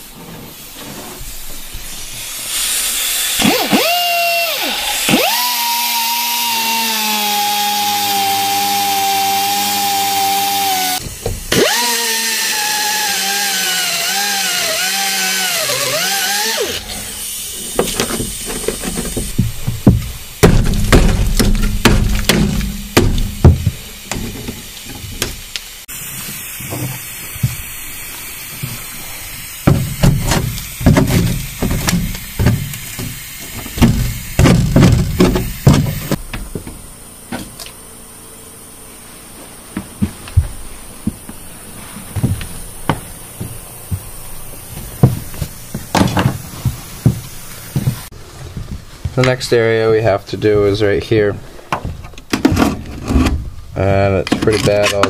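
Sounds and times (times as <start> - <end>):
power cutting tool whining: 2.8 - 19.4
knocks and bangs on metal: 18.8 - 25.4, 29.7 - 36.8.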